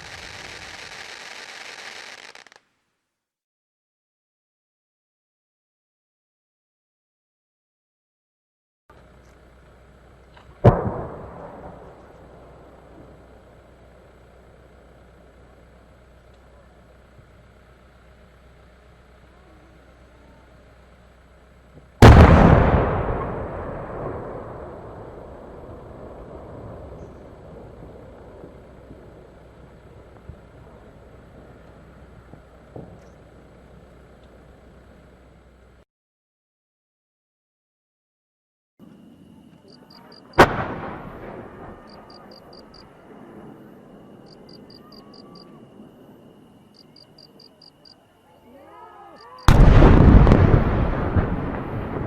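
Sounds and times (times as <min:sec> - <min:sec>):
rumbling echo: 0:22.0 - 0:33.0, 0:49.5 - 0:52.0
faint high chirping: 0:38.8 - 0:40.4, 0:41.8 - 0:49.5.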